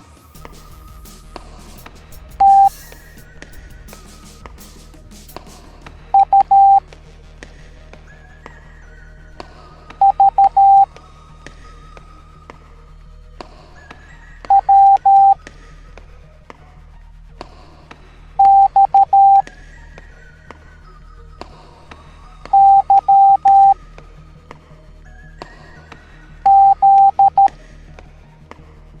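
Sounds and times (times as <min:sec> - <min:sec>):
quiet background music: 0:00.0 - 0:29.0
morse code beeps: 0:02.4 - 0:02.8, 0:06.2 - 0:06.8, 0:10.0 - 0:10.9, 0:14.5 - 0:15.4, 0:18.4 - 0:19.4, 0:22.6 - 0:23.8, 0:26.5 - 0:27.5.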